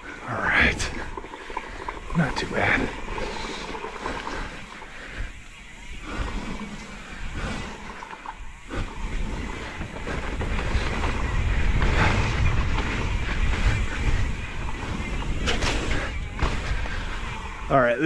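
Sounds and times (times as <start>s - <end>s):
mountain bike rolling on dirt: 0.0s - 18.0s
wind noise on microphone: 8.7s - 17.4s.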